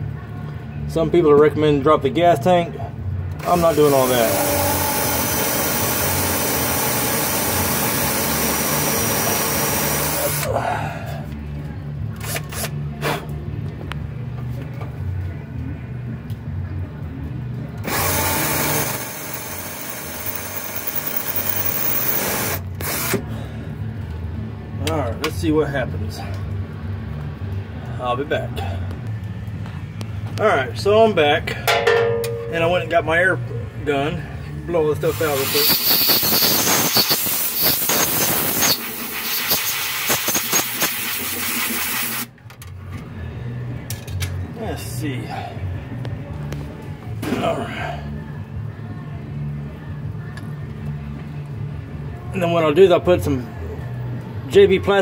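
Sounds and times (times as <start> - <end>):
power drill boring plastic: 3.4 - 10.5, 17.8 - 23.2, 35.5 - 42.3
compressed air blow gun hissing: 35.2 - 42.3.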